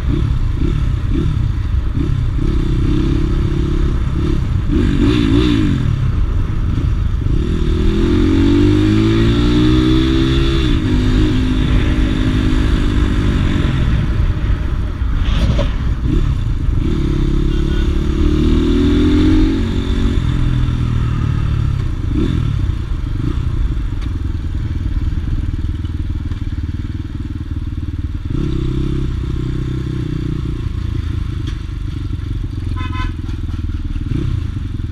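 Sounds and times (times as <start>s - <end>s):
motorcycle engine accelerating: 0.0s - 34.9s.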